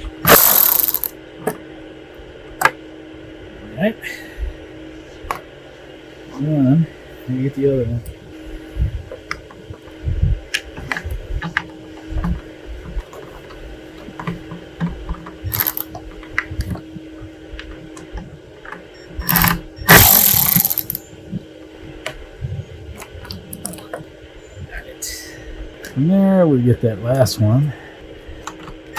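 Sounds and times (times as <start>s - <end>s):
cordless driver spinning: 0.0s - 1.1s, 15.5s - 15.9s, 19.2s - 21.0s
clicks and knocks of parts handled: 0.2s - 1.6s, 14.2s - 16.8s, 18.7s - 21.0s.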